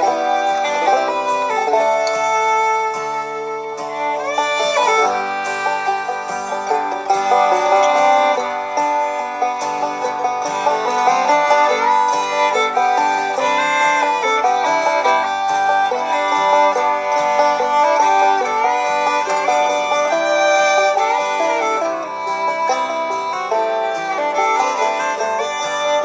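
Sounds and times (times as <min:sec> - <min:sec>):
banjo picking: 0:00.0 - 0:26.0
fiddle: 0:00.0 - 0:26.0.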